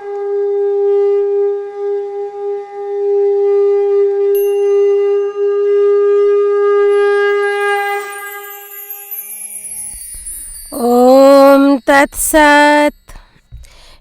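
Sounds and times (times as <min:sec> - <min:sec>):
conch shell blown: 0:00.0 - 0:10.0
small bells jingling: 0:07.7 - 0:14.0.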